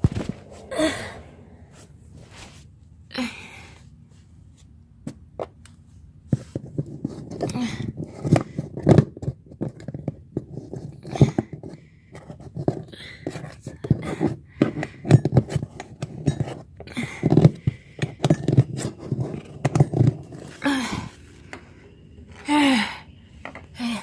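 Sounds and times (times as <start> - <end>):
short vocal sound: 0.2 - 2.4.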